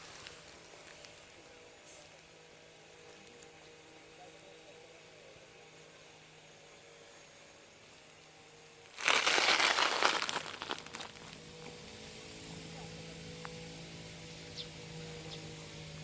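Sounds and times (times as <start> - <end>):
rustling and crinkling: 8.8 - 11.4.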